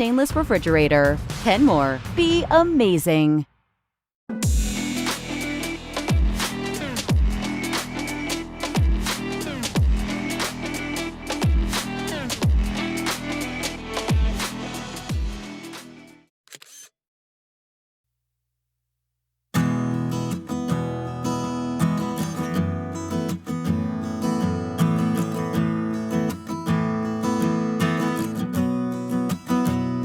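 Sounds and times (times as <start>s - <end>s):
guitar music with steady beat: 4.4s - 16.2s, 19.6s - 30.0s
electronic music: 4.5s - 16.1s.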